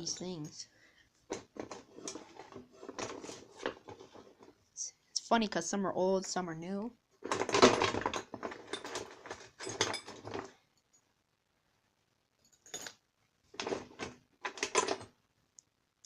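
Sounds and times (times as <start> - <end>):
metal tools clinking: 7.3 - 11.0, 12.4 - 13.0.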